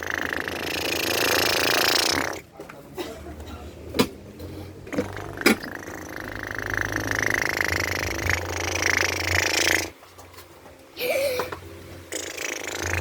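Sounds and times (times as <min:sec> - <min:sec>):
child imitating a helicopter: 0:05.1 - 0:09.9, 0:11.0 - 0:13.0.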